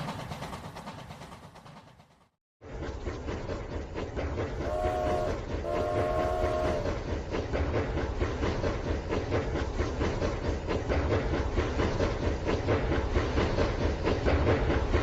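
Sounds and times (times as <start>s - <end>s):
electronic train horn: 4.6s - 7.0s.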